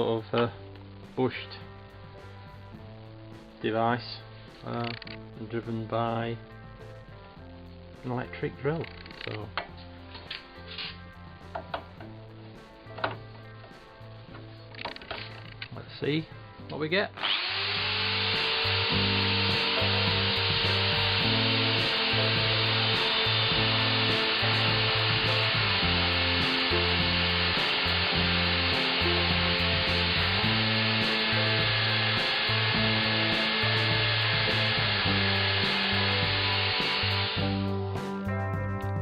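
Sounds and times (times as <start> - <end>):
background music: 0.0 - 39.0
electric drill cutting wood: 17.2 - 37.7.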